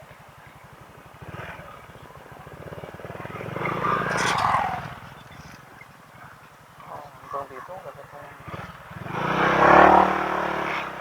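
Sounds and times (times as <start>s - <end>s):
scooter engine running: 0.1s - 5.4s
vehicle passing by: 3.2s - 5.6s.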